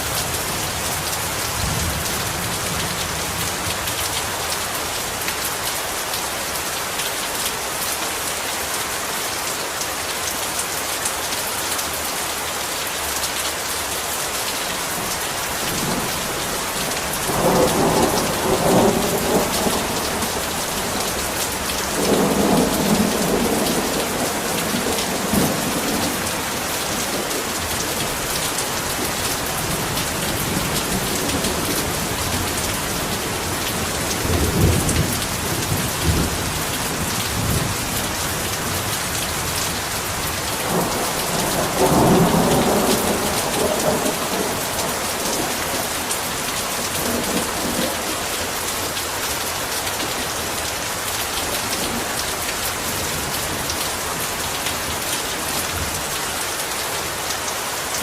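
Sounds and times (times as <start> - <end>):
heavy rain pouring: 0.0 - 58.0
thunder rumbling: 40.6 - 48.0.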